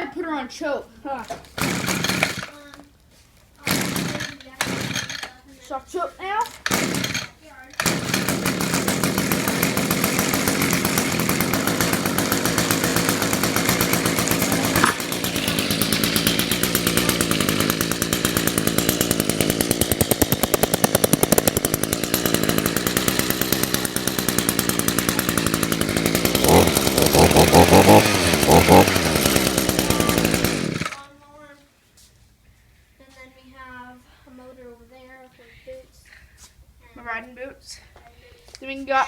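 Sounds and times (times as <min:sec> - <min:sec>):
string trimmer engine running: 0:01.3 - 0:02.6, 0:03.6 - 0:05.4, 0:06.4 - 0:31.1.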